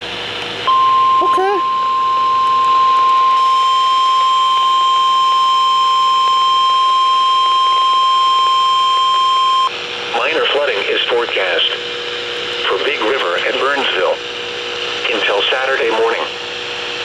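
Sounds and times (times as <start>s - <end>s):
shrill warning alarm tone: 0.7s - 9.7s.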